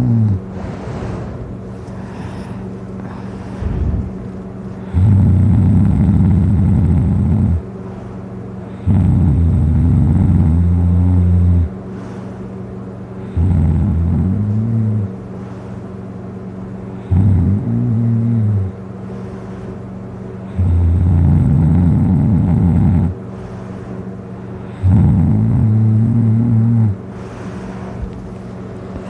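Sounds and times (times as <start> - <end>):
person snoring loudly: 0.0 - 4.2, 4.8 - 7.6, 8.8 - 11.7, 13.3 - 15.1, 17.0 - 18.7, 20.5 - 23.2, 24.7 - 27.0
steady low hum: 0.0 - 29.0.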